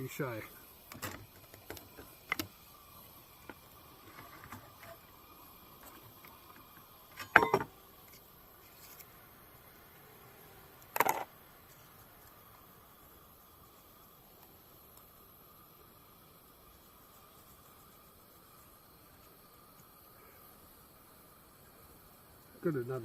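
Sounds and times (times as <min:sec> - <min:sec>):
faint steady background noise: 0:00.0 - 0:23.0
cooking gear clattering: 0:07.2 - 0:07.7.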